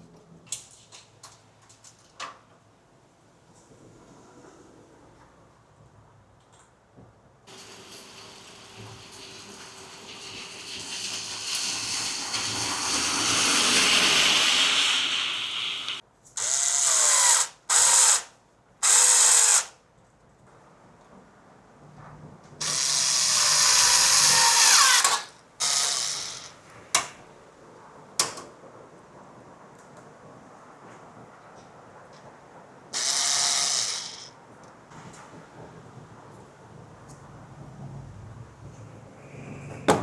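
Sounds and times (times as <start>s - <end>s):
electric screwdriver motor: 14.3s - 19.7s, 22.6s - 26.5s, 33.0s - 34.3s.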